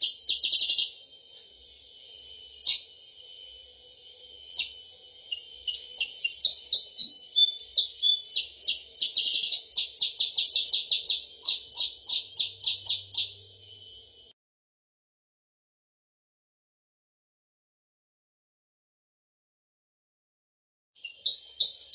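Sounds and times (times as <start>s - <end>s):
sharp high bird chirps: 0.0s - 14.3s, 21.0s - 21.9s
steady hiss: 0.0s - 14.4s.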